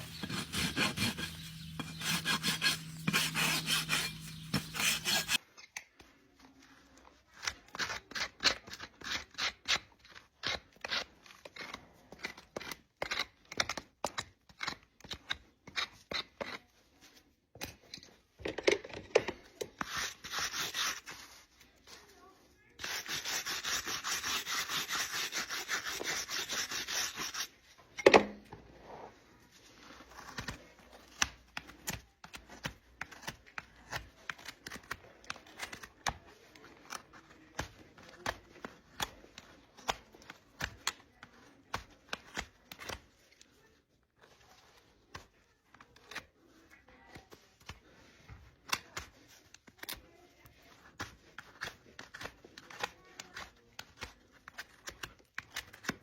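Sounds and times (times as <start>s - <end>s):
scraping hoof: 0.0s - 5.4s
trimming tools snipping hoof: 0.0s - 5.7s.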